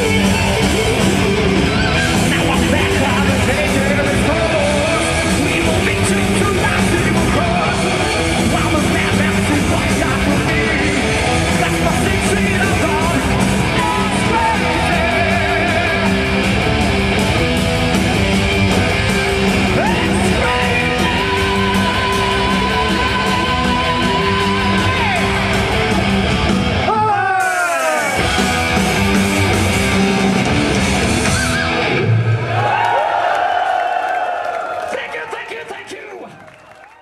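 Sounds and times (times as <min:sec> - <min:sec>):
bass guitar: 0:00.0 - 0:27.5, 0:28.1 - 0:33.1
distorted electric guitars: 0:00.0 - 0:32.8
drums: 0:00.0 - 0:36.2
sung and yelled vocals: 0:01.2 - 0:16.9, 0:18.9 - 0:28.4.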